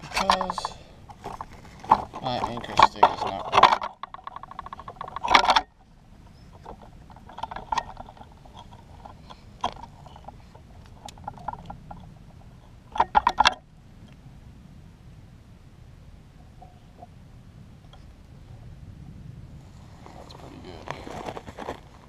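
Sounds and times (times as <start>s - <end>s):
wooden sticks clicking and knocking: 0.1s - 5.7s.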